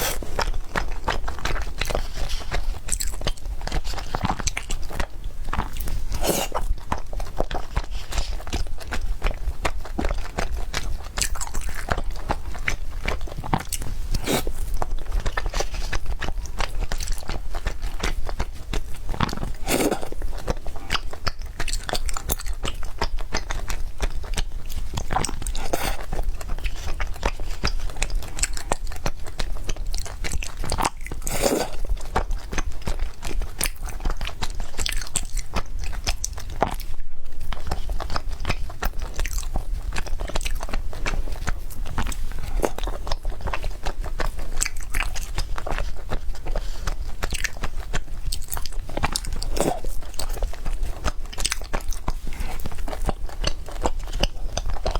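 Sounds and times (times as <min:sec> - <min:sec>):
biting cake: 0:00.0 - 0:36.9
wet chewing: 0:00.0 - 0:54.9.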